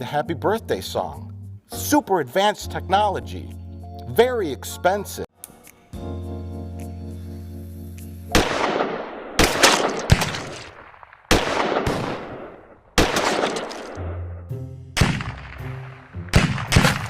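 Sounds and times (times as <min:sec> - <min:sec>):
firework bangs: 0:08.3 - 0:14.0
firework cracks: 0:08.3 - 0:14.0, 0:15.0 - 0:17.0.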